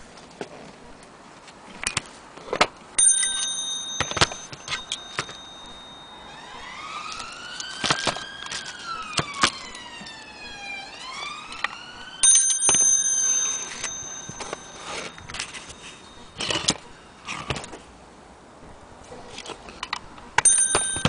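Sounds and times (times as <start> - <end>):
clock movement clicks and knocks: 3.0 - 5.8, 12.3 - 16.8
high ringing tone: 3.0 - 17.4, 20.4 - 21.0
wailing siren: 6.0 - 12.6.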